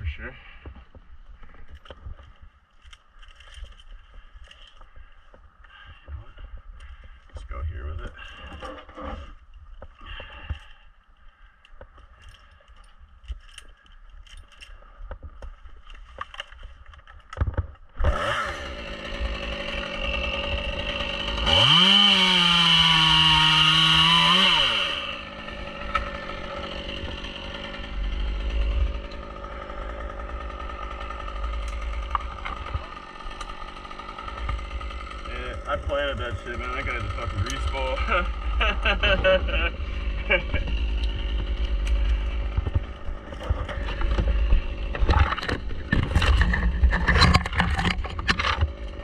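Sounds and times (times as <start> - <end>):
chainsaw idling and revving: 17.9 - 49.0.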